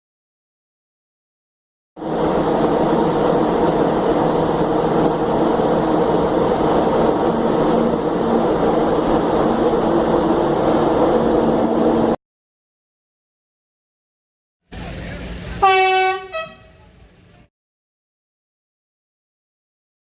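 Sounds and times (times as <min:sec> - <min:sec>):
electric train interior hum: 0:02.0 - 0:12.2, 0:14.7 - 0:17.5.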